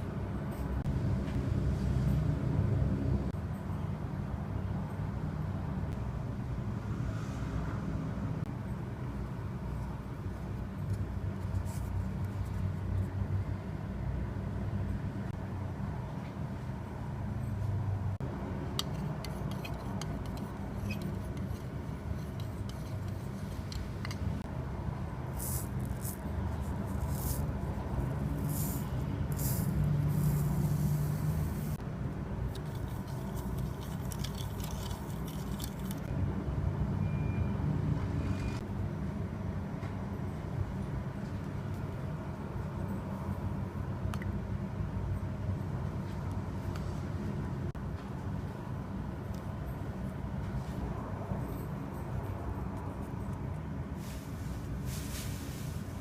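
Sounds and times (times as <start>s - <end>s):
light clicks and scrapes: 18.8s - 24.5s, 32.5s - 36.1s.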